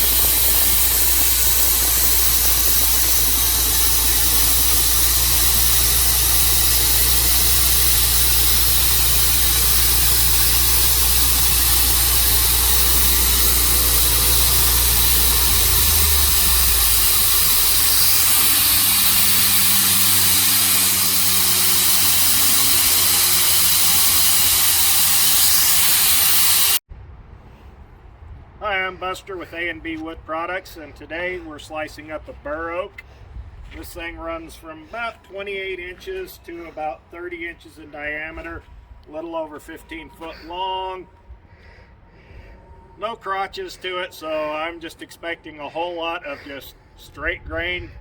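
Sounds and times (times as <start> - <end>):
loud steady hiss: 0.0 - 26.8
sawmill engine running: 0.0 - 26.8.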